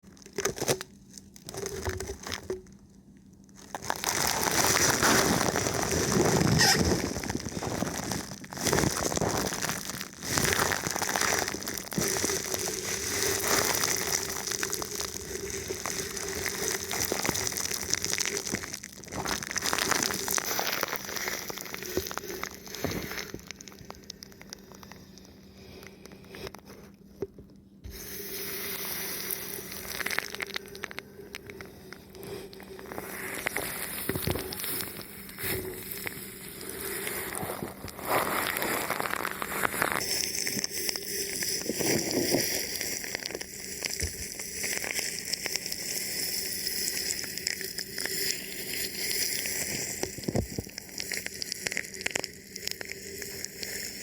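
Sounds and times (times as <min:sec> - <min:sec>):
plastic film crinkling on microphone: 0:00.0 - 0:02.8, 0:03.4 - 0:54.0.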